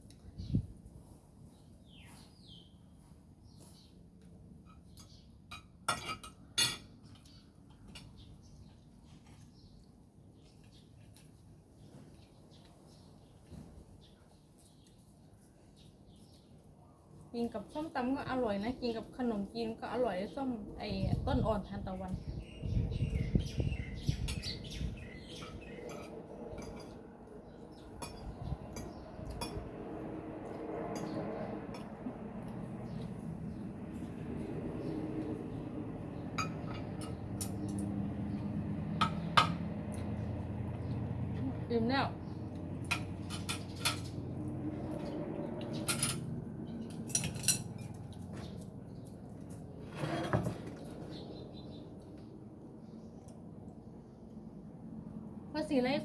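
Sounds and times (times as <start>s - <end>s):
tableware clinking: 5.5s - 7.0s, 36.4s - 37.6s, 47.1s - 48.0s.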